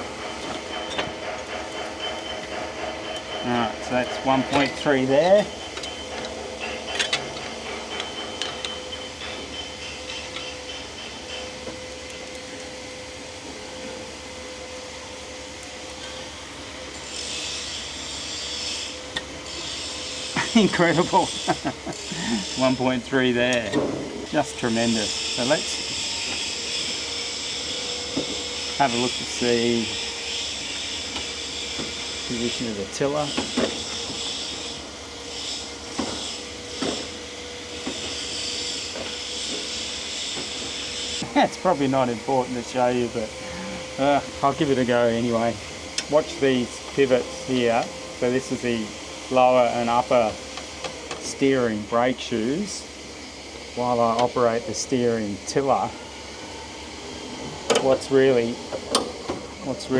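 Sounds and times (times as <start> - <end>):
metal rubbing and scraping: 0.0 - 20.3
workshop hum: 0.0 - 59.9
tools knocking and clicking: 0.2 - 13.0.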